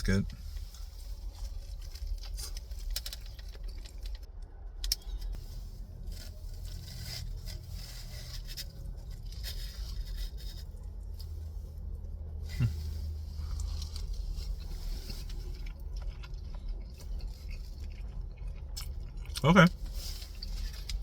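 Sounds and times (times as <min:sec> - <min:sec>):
low steady hum: 0:00.0 - 0:21.0
sandwich wrapper crackling: 0:00.2 - 0:12.0
person eating: 0:12.4 - 0:21.0.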